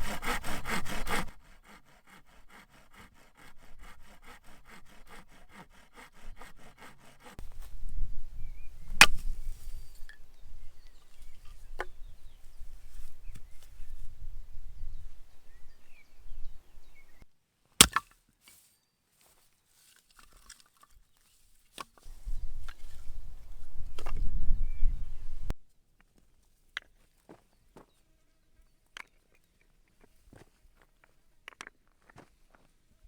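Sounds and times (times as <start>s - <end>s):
wind buffeting microphone: 7.4s - 17.2s, 22.1s - 25.5s.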